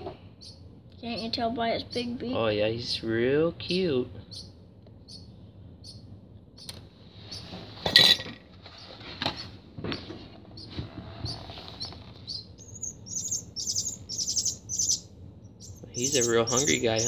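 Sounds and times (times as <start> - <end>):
bird nestling begging chirps: 0.4 - 2.2, 2.8 - 7.5, 10.5 - 17.0.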